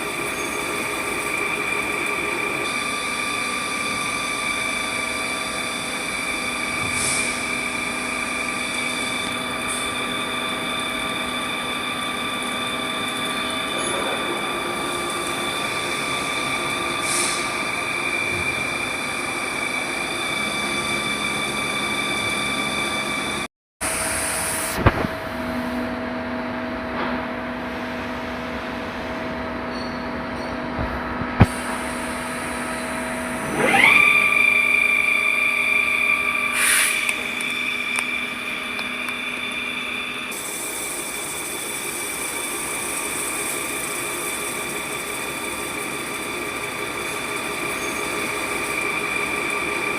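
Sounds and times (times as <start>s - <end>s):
lathe machine whine: 0.0s - 24.9s, 31.5s - 49.9s
whine rising in pitch: 31.3s - 49.9s.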